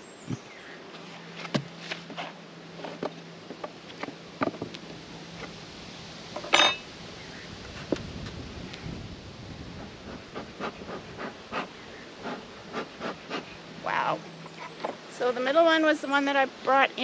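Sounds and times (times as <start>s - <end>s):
bee buzzing: 9.6s - 16.3s.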